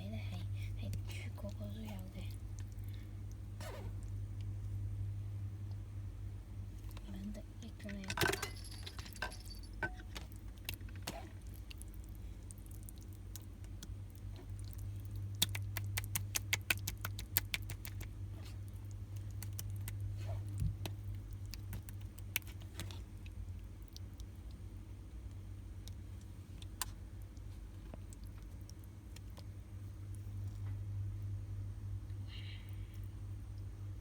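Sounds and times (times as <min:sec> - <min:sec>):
steady low hum: 0:00.0 - 0:34.0
slime squishing with wet clicks: 0:00.2 - 0:04.6, 0:10.2 - 0:31.2.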